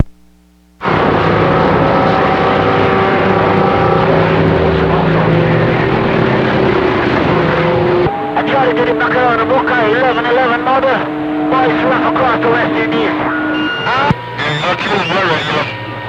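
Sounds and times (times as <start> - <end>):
whistling radio carrier tones: 0.8 - 16.0
radio static hiss: 2.8 - 16.0.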